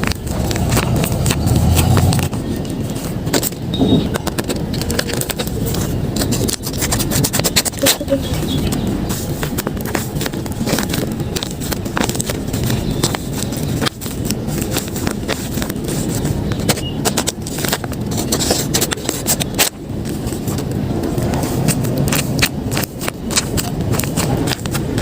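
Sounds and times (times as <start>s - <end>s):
low background rumble: 0.0s - 25.0s
paper crinkling and rustling: 0.0s - 25.0s.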